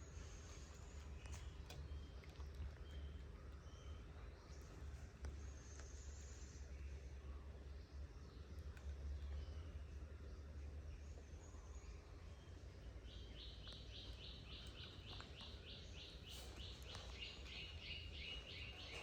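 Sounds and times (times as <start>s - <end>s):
low steady hum: 0.0s - 19.0s.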